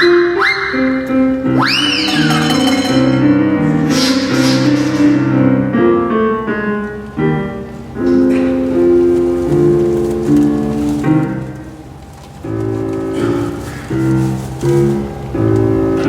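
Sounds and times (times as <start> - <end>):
piano playing short repeated chords: 0.0 - 5.4.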